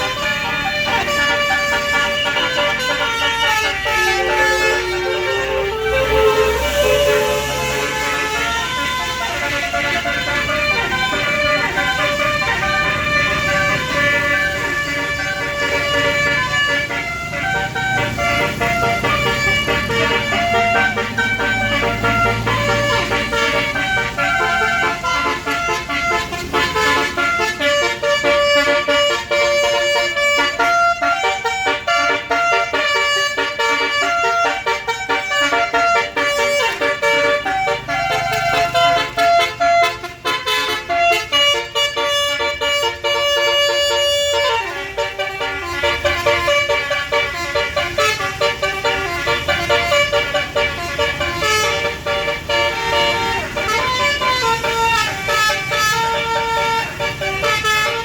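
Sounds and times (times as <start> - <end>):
bus air horn melody: 0.0 - 58.0.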